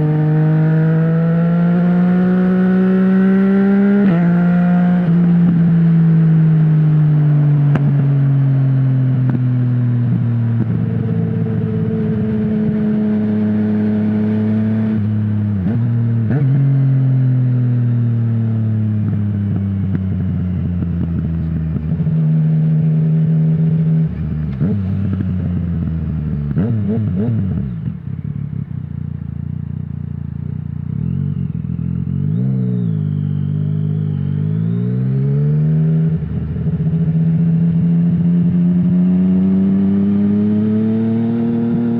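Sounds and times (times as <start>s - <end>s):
motorcycle engine braking: 24.1s - 35.1s.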